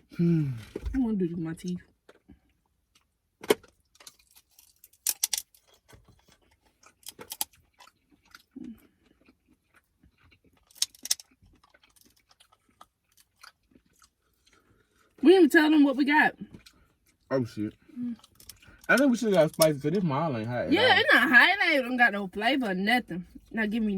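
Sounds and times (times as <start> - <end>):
crab shells cracking: 3.0 - 14.6, 18.2 - 19.7
quiet chewing: 5.6 - 15.2, 16.4 - 19.6.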